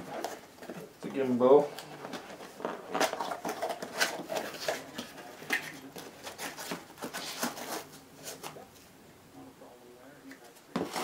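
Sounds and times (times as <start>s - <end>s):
packaging rustling and crinkling: 0.0s - 8.6s.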